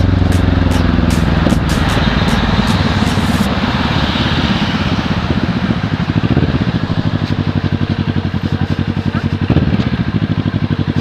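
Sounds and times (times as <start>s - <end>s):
motorcycle engine running: 0.0s - 11.0s.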